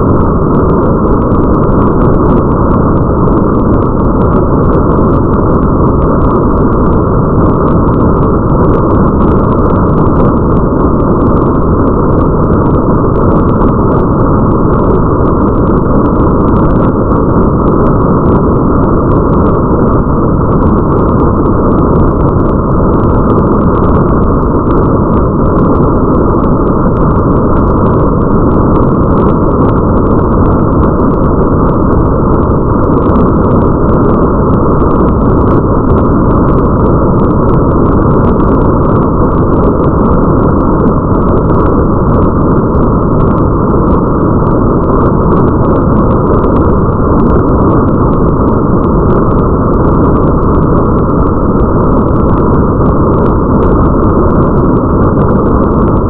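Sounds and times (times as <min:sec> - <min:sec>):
low rumble: 0:00.0 - 0:56.0
muffled rain: 0:00.0 - 0:56.0.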